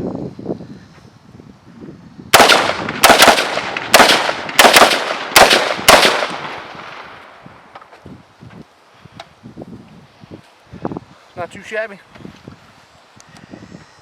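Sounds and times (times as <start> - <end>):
rifle shots with echo: 2.3 - 7.2.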